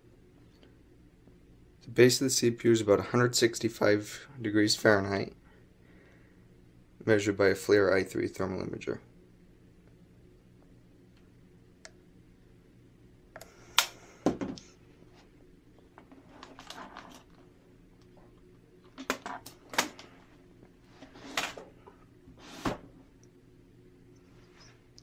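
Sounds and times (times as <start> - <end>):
faint low hum: 0.0 - 25.0
computer hardware clatter: 15.9 - 17.5, 18.2 - 20.3, 21.0 - 21.8.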